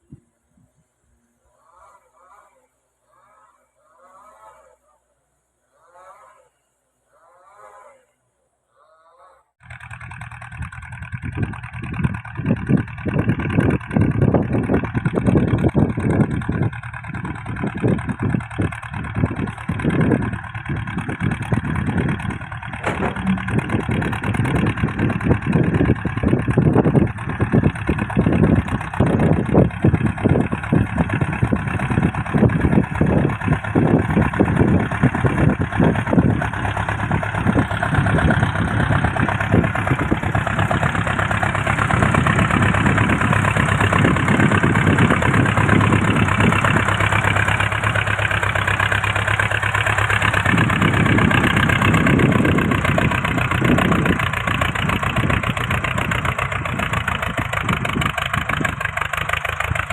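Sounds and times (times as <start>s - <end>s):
crawler tractor engine running: 9.6s - 59.9s.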